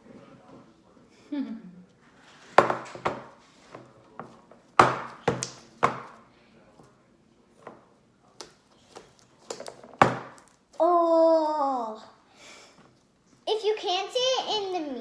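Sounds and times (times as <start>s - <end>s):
slime smacking and popping: 5.3s - 5.7s.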